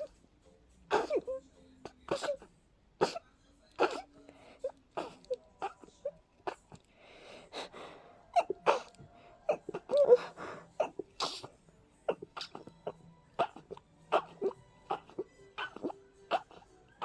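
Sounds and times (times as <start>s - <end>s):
person sneezing: 0.9s - 1.4s, 5.0s - 5.9s, 8.4s - 8.9s, 9.5s - 12.7s.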